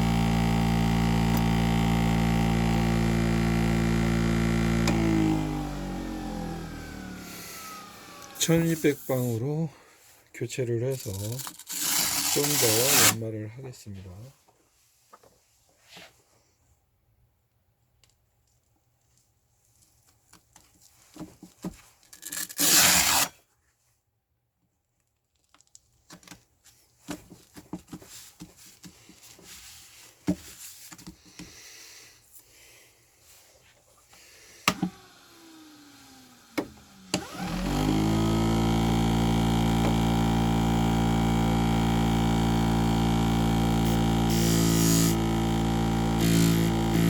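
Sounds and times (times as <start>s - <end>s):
grinding machine motor hum: 0.0s - 9.2s, 34.8s - 47.0s.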